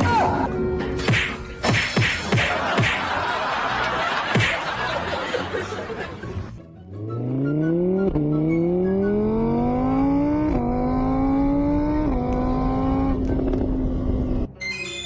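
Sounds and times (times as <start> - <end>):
vehicle engine accelerating: 6.2 - 14.5.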